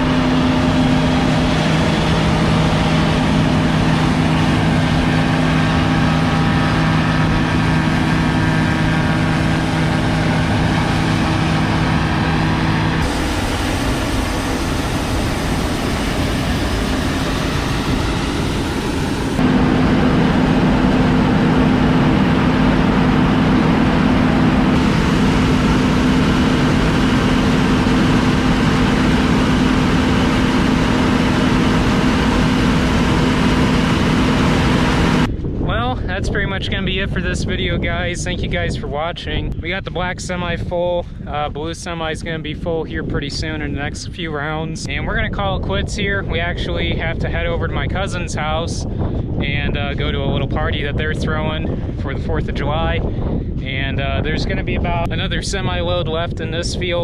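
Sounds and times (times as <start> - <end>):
combine harvester diesel hum: 0.0 - 36.3.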